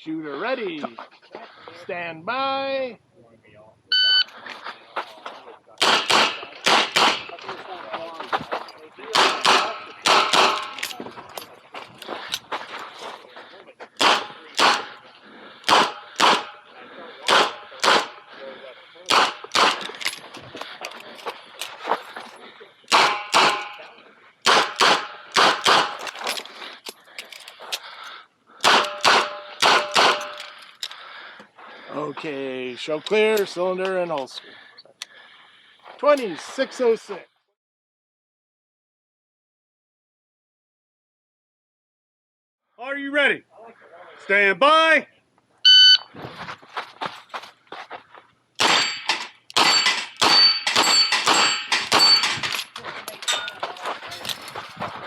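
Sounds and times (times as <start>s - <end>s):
metallic ring: 48.7s - 53.6s.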